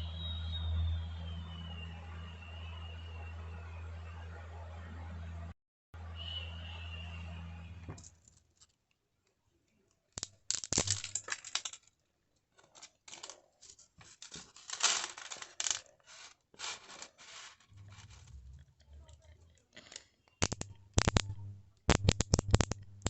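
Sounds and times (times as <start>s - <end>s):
sharp clicks taps and rustles: 17.8s - 23.0s.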